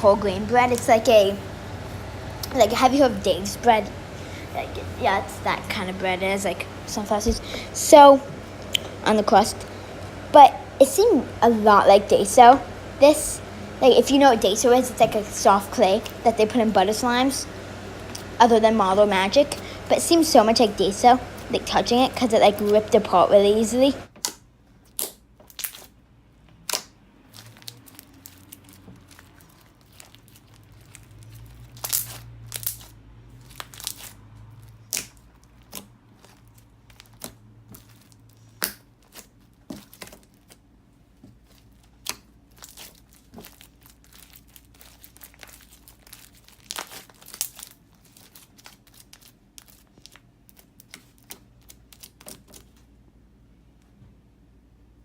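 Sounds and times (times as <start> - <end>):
hands squishing slime: 26.6 - 40.6, 41.3 - 52.7.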